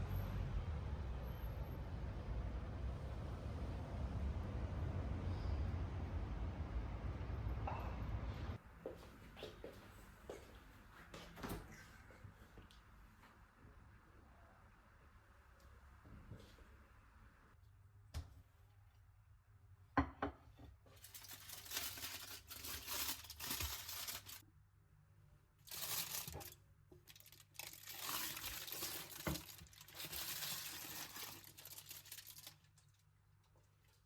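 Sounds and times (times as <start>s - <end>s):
paper wrapping crinkling and tearing: 21.0s - 24.4s, 25.6s - 33.0s.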